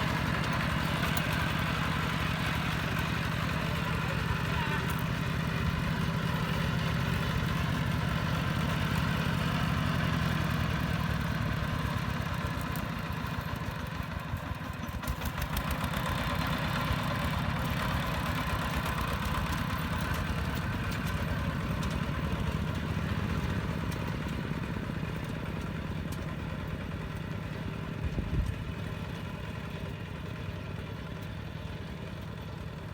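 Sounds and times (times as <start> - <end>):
diesel engine running: 0.0 - 32.9.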